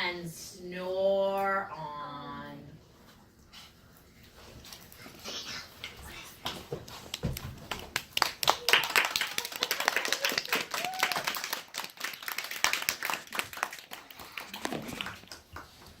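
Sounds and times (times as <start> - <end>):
small group clapping: 6.4 - 16.0.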